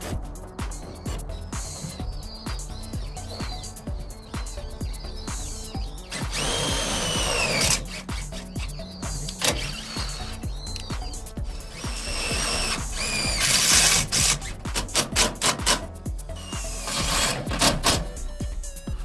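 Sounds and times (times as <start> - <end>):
background music with steady beat: 0.0 - 19.0
power tool bursts: 6.1 - 8.6, 9.3 - 10.4, 11.7 - 15.8, 16.4 - 18.1.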